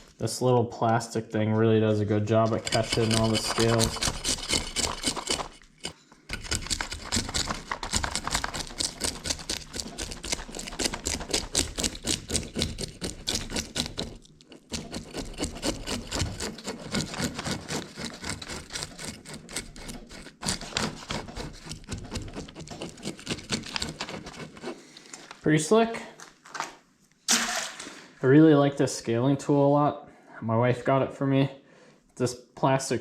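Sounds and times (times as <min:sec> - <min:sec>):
fish scaler rasping scales: 0:02.5 - 0:25.0.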